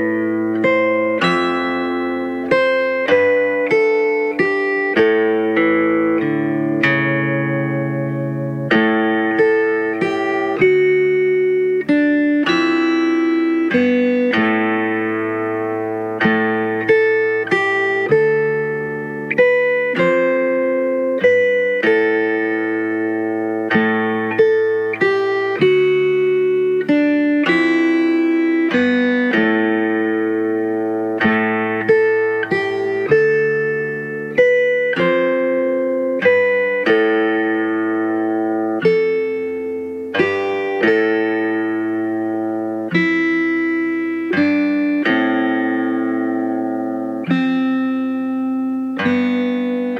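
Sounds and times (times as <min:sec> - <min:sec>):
plucked string instrument music: 0:00.0 - 0:49.9.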